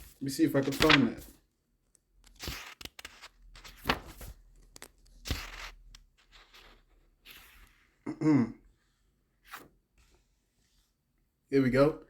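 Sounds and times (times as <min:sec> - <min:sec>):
paper pages turning: 0:00.0 - 0:01.4, 0:02.2 - 0:07.9, 0:09.4 - 0:10.2.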